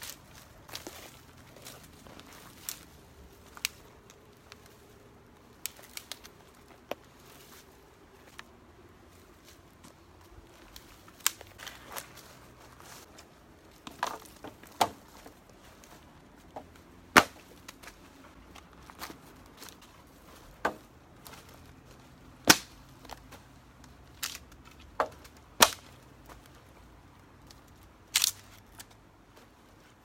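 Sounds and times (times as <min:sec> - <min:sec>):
campfire crackling and popping: 0:05.4 - 0:07.0.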